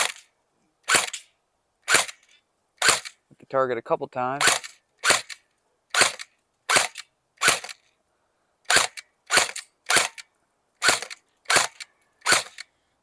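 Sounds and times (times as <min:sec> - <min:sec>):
airsoft gun firing single shots: 0:00.0 - 0:00.3, 0:00.9 - 0:01.2, 0:01.9 - 0:02.2, 0:02.8 - 0:03.2, 0:04.4 - 0:07.8, 0:08.7 - 0:10.2, 0:10.8 - 0:12.6.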